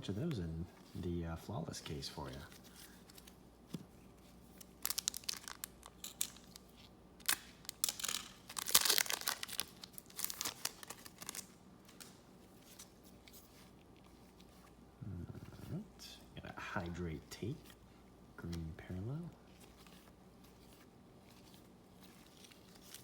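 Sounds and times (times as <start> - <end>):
plastic wrapper crinkling and tearing: 4.5 - 12.8, 19.7 - 23.0.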